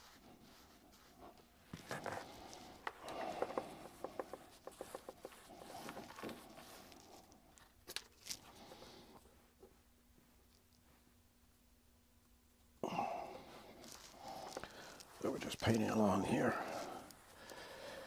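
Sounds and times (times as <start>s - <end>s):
soft brush rubbing: 0.0s - 7.3s, 13.4s - 17.4s.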